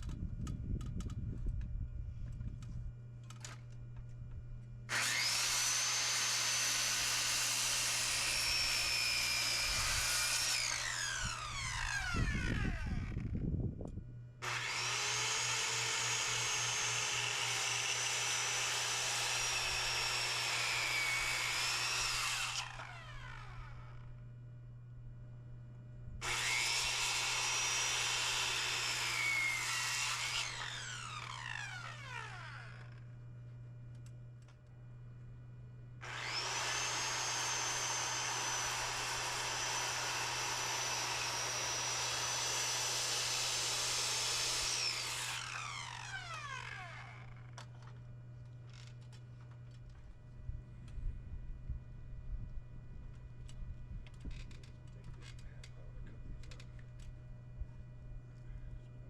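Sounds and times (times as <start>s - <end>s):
steady low hum: 0.0s - 4.9s, 21.1s - 26.3s, 47.2s - 59.0s
power tool motor running: 4.9s - 13.3s, 14.4s - 24.1s, 26.2s - 33.1s, 36.0s - 47.6s.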